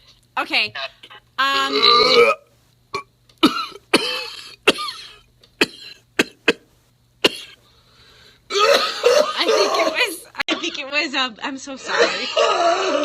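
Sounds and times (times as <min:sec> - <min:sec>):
man coughing: 0:03.4 - 0:06.6, 0:07.2 - 0:07.6, 0:08.5 - 0:10.7.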